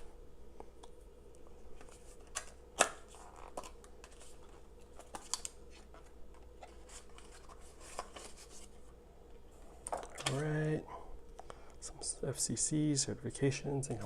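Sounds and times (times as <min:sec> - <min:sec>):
paper rustling: 0:03.1 - 0:08.9.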